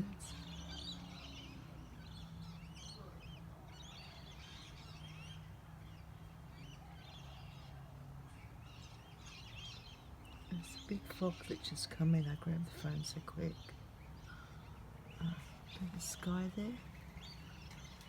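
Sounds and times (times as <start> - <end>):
birds chirping faintly: 0.0 - 18.0
low steady hum: 0.0 - 18.0.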